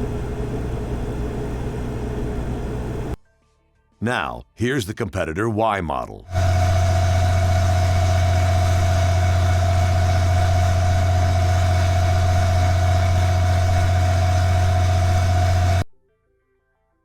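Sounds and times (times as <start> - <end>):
generator humming: 0.0 - 3.2, 6.3 - 15.8.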